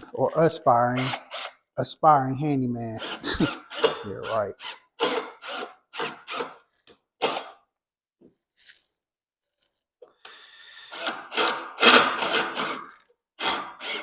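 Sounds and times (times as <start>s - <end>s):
cordless drill driving a screw: 1.0s - 1.6s, 3.0s - 6.6s, 7.2s - 7.6s, 10.9s - 14.0s
person coughing: 3.2s - 3.6s.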